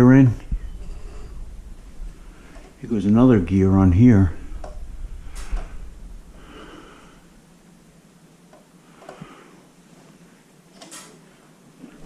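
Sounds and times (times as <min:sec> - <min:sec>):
low background noise: 0:00.0 - 0:12.0
faint clicks and taps: 0:04.6 - 0:04.8.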